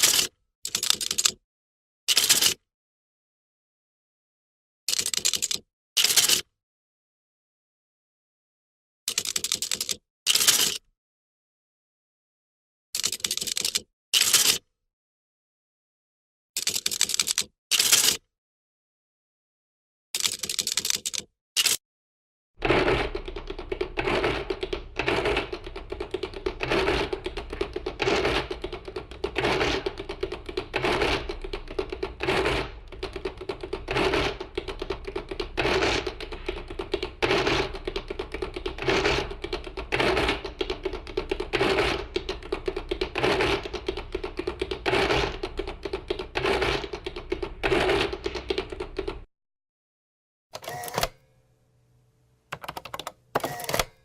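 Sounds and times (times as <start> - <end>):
keys clicking: 0.0 - 1.4, 4.9 - 5.6, 20.2 - 21.8, 22.6 - 49.3, 52.5 - 54.0.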